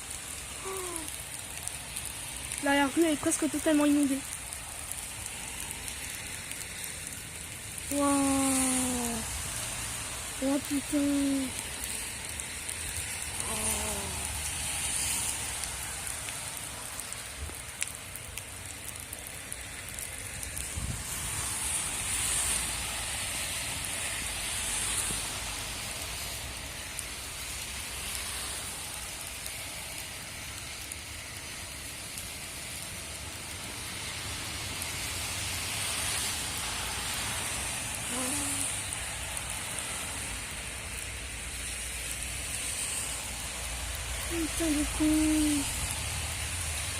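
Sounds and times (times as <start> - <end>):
heavy rain pouring: 0.0 - 46.9
strong wind: 20.6 - 25.5.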